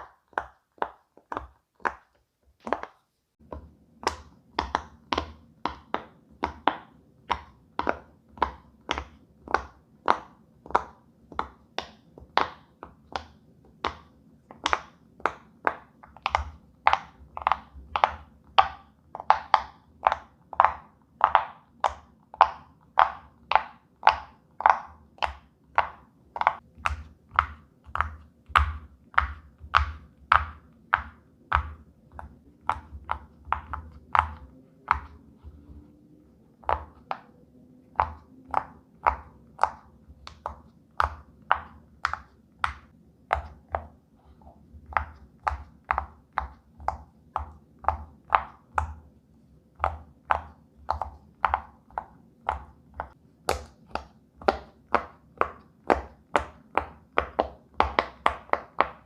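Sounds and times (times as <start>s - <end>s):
pop-it toy bubbles popping: 0.0s - 35.8s, 36.6s - 44.0s, 44.8s - 49.0s, 49.8s - 59.0s.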